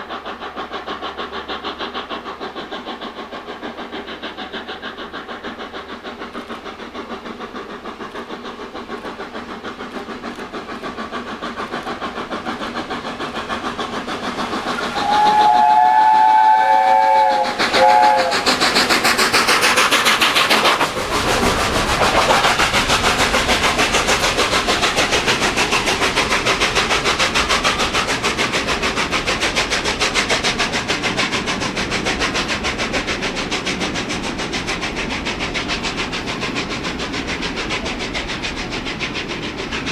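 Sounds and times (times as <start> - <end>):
steam locomotive exhaust beats: 0.0 - 39.9
train wheels on rails: 0.0 - 39.9
steam locomotive chime whistle: 15.0 - 18.4.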